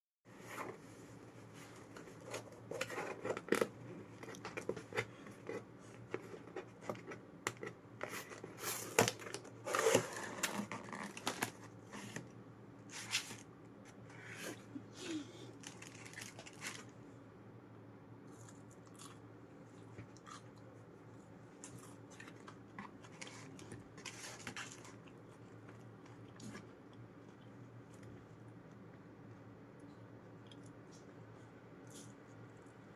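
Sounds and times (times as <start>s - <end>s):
food packaging crinkling and tearing: 2.2s - 11.8s, 15.6s - 17.0s
crunchy bites and chewing: 18.3s - 20.7s.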